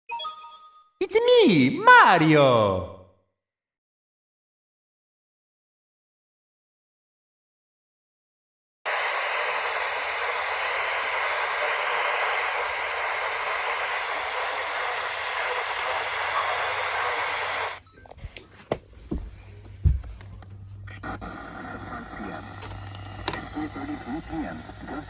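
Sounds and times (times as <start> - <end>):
radio static hiss: 8.9 - 17.8, 21.0 - 25.0
clicks and thumps: 18.0 - 20.6.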